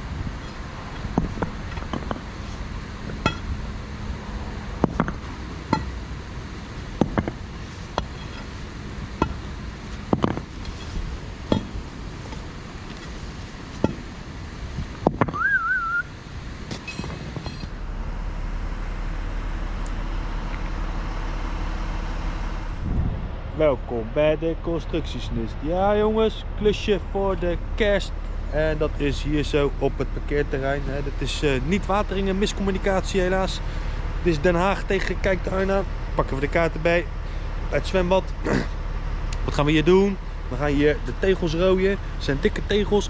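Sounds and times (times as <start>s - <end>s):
low engine hum: 0.0s - 43.0s
low machine rumble: 0.0s - 43.0s
hard objects clinking and knocking: 0.4s - 3.6s, 4.8s - 6.0s, 6.7s - 14.1s, 16.7s - 17.7s
short warbling whistle: 15.3s - 16.1s.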